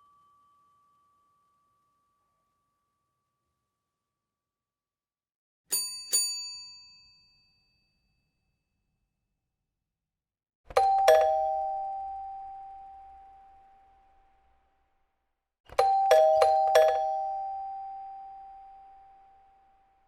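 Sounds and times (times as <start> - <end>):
lower ding-dong doorbell: 10.7 - 14.0, 15.7 - 19.8
high doorbell chime: 10.8 - 13.6, 15.8 - 19.4.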